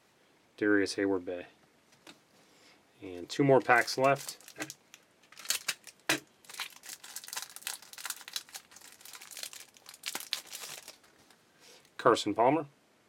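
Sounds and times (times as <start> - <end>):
wrapper crinkling and tearing: 3.6 - 11.4.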